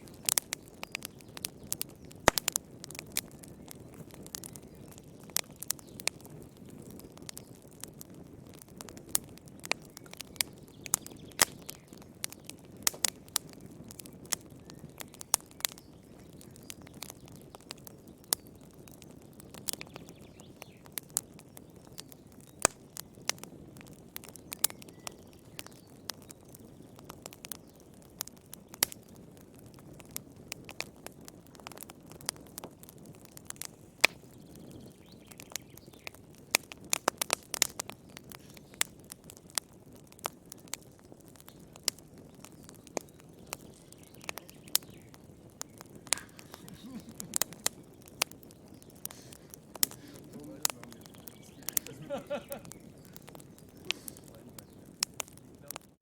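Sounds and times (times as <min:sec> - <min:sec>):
fire crackling and popping: 0:00.0 - 0:56.0
fire rumbling: 0:00.0 - 0:56.0.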